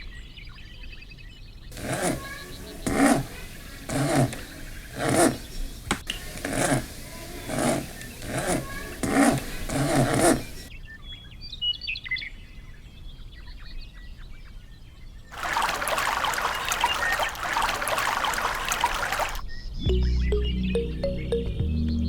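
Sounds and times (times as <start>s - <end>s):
small birds chirping: 1.7s - 10.7s, 15.3s - 19.4s
rushing pouring noise: 1.8s - 10.7s, 15.3s - 19.4s
music: 19.8s - 22.0s.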